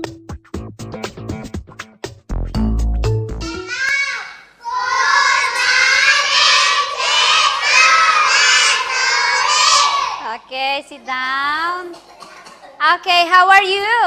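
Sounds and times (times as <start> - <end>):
children chanting in unison: 3.9 - 10.3.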